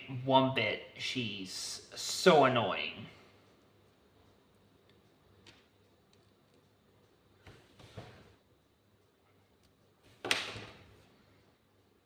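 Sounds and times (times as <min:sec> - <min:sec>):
person's voice: 0:00.0 - 0:03.3.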